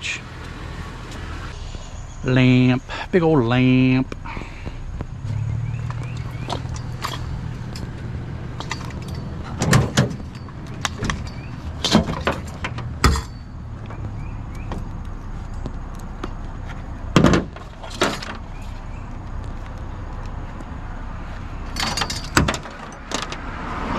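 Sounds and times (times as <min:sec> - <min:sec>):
vehicle engine idling: 0:00.0 - 0:23.1
scrap metal clanking: 0:06.3 - 0:13.6.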